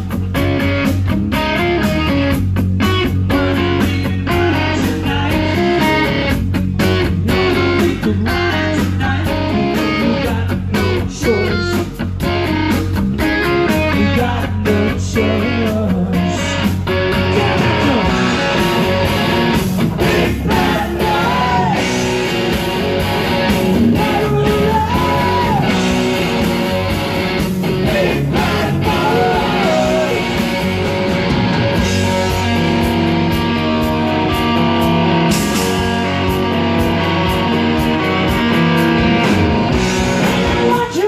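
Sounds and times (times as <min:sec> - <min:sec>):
drums: 0:00.0 - 0:41.0
electric guitar: 0:00.0 - 0:41.0
person singing: 0:17.2 - 0:19.3, 0:20.0 - 0:22.4, 0:23.8 - 0:26.9, 0:27.7 - 0:30.8.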